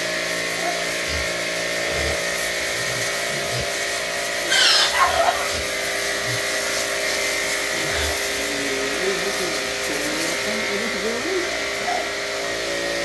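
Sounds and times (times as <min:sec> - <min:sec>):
steady mechanical hum: 0:00.0 - 0:13.0
pig squealing: 0:00.5 - 0:10.5.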